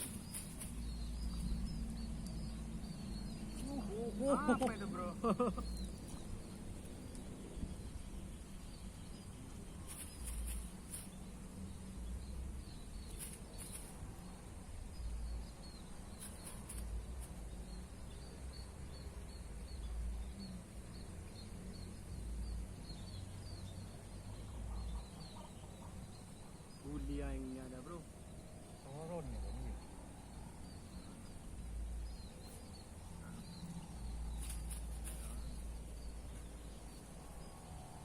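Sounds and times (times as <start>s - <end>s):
high insect whine: 0.0s - 9.0s
bird chirping: 0.0s - 38.0s.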